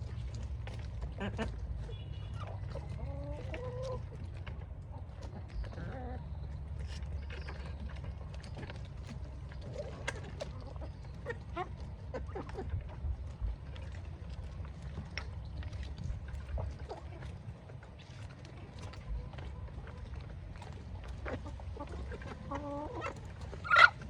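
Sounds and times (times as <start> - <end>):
chickens and ducks calling: 0.2 - 15.8, 18.6 - 24.0.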